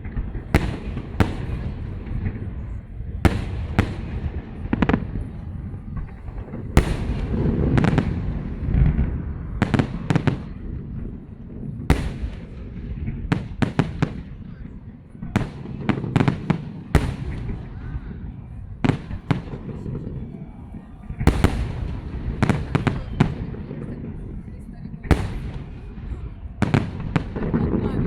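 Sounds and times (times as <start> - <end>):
fireworks bangs: 0.0 - 28.0.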